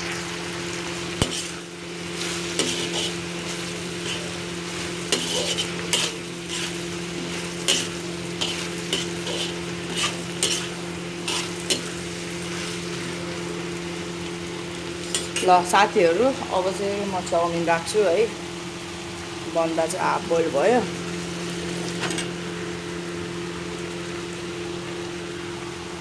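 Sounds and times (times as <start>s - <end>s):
vegetables sizzling in a pan: 0.0s - 26.0s
utensil scraping against pan: 1.2s - 12.9s.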